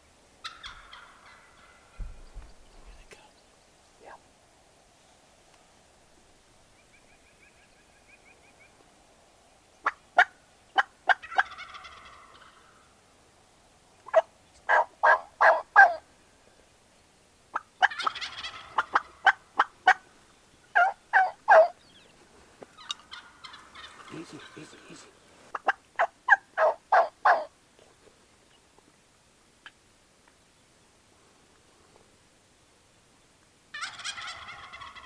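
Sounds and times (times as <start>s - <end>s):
turkey yelps: 0.4s - 1.8s, 9.8s - 12.7s, 14.1s - 16.0s, 17.5s - 20.0s, 20.8s - 21.8s, 22.8s - 24.7s, 25.5s - 27.5s, 33.7s - 35.0s
turkey gobbles: 9.8s - 12.7s, 14.1s - 16.0s, 17.5s - 20.0s, 20.7s - 21.8s, 22.8s - 27.5s, 33.8s - 35.0s.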